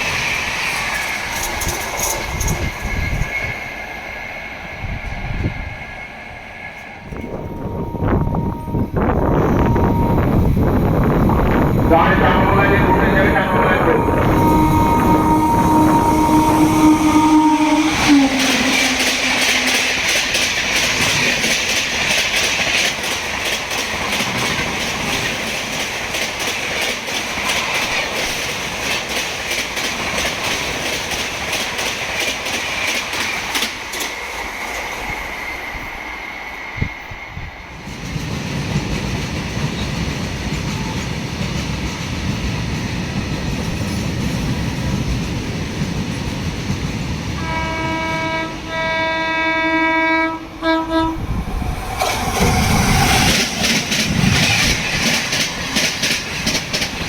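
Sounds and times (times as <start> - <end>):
low train rumble: 0.0 - 57.0
train wheels clattering over rail joints: 18.4 - 34.2, 52.0 - 57.0.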